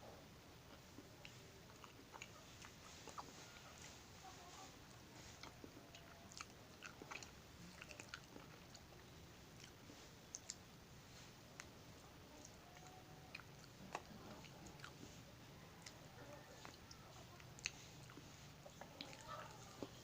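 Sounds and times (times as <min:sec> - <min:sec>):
close-up chewing: 0:00.6 - 0:20.0
wet mouth clicks: 0:09.6 - 0:10.7.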